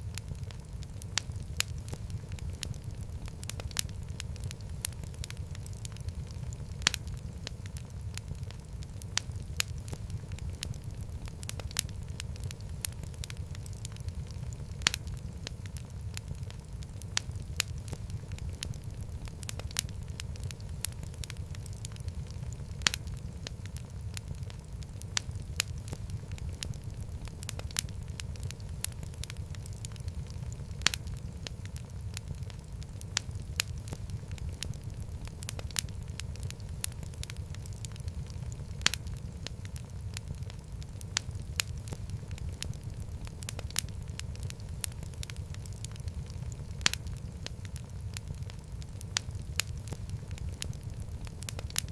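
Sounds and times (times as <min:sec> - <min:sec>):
fire crackling and popping: 0:00.0 - 0:51.9
low rumble of flames: 0:00.0 - 0:51.9.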